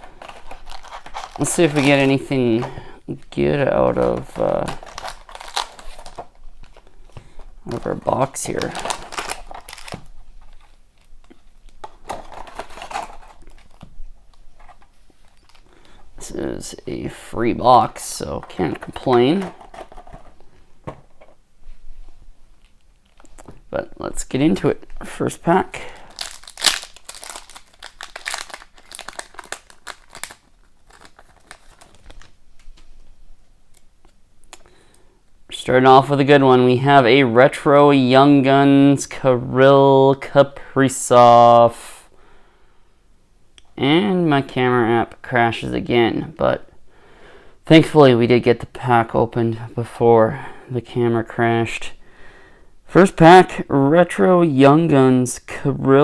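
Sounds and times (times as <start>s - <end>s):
plastic wrap crinkling: 0.0s - 16.8s, 17.4s - 21.2s, 24.6s - 33.9s.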